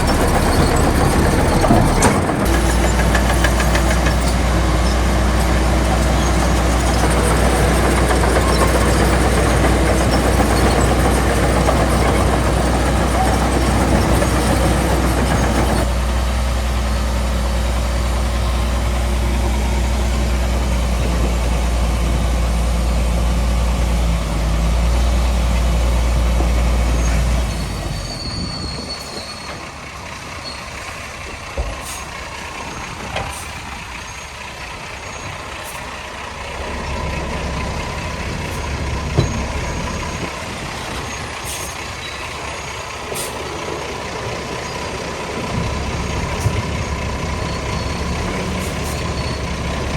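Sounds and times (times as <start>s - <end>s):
metal clanks and knocks: 0.0s - 15.9s, 37.8s - 40.3s
heavy diesel engine running: 0.0s - 49.9s.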